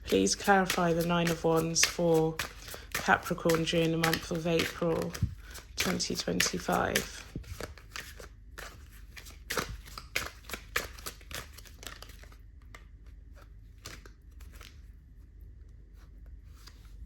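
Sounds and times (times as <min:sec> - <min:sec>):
cards being shuffled: 0:00.0 - 0:14.9.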